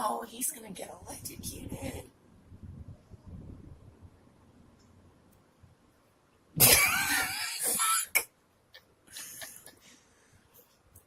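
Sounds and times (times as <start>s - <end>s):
person rough cough-like outburst: 6.6s - 8.3s.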